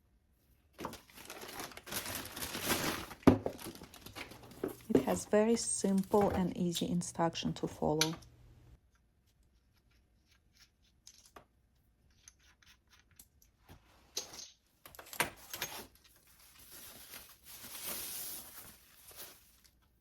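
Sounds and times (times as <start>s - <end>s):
packaging rustling and crinkling: 0.8s - 6.6s, 15.0s - 19.9s.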